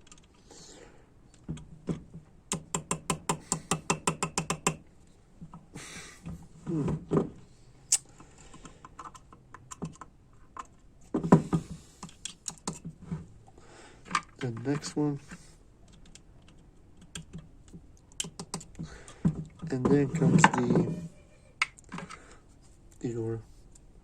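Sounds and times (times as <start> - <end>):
small hard parts clicking: 0.0 - 0.5, 1.3 - 4.8, 14.0 - 23.1.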